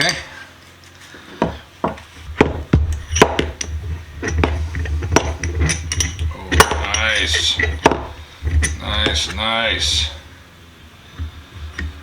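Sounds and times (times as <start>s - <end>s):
low steady hum: 0.0s - 12.0s
metal clicks and knocks: 1.9s - 9.3s.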